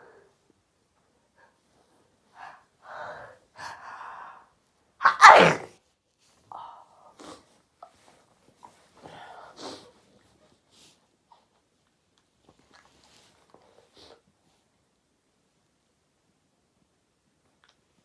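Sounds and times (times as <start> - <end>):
person gasping breaths: 2.4 - 4.6
person sneezing loudly: 5.0 - 5.7.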